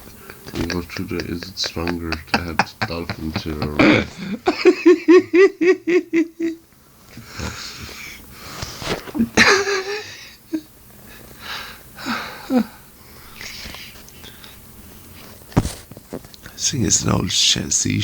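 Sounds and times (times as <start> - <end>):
man snoring: 3.7 - 4.4.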